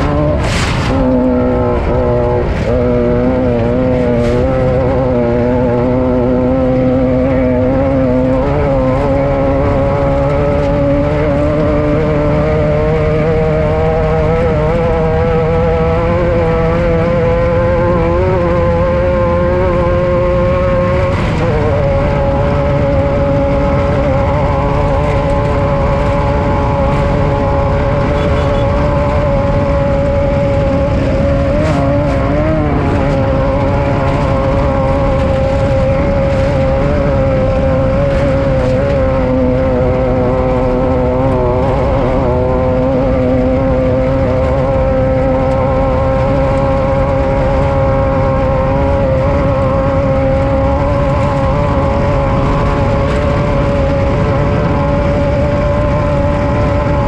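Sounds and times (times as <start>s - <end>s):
engine running at high revs: 0.0s - 57.0s
low rumble: 0.0s - 57.0s.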